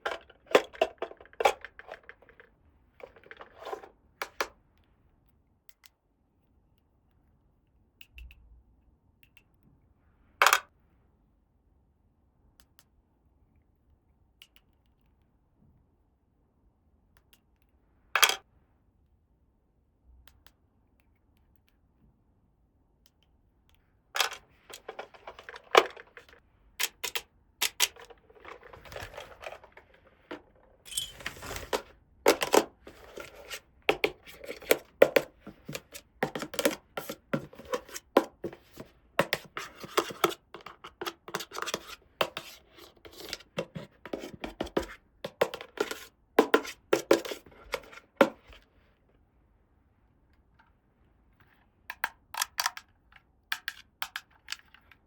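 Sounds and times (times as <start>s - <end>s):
plastic toy pieces handled: 0.0s - 4.5s, 24.2s - 48.7s, 51.4s - 55.0s.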